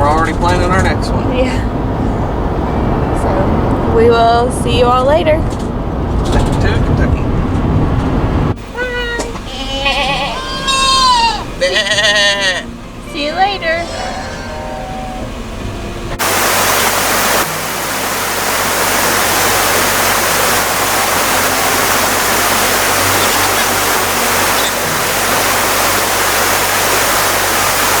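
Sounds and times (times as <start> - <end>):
waterfall rushing: 16.1 - 28.0.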